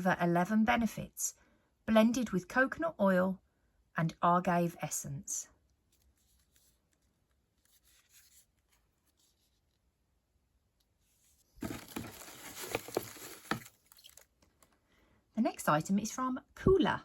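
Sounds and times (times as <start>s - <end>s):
packaging rustling and tearing: 11.6s - 14.7s.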